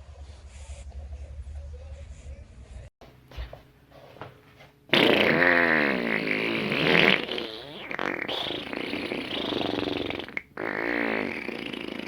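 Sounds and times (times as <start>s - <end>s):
fart sound with wobbling pitch: 4.9s - 12.0s.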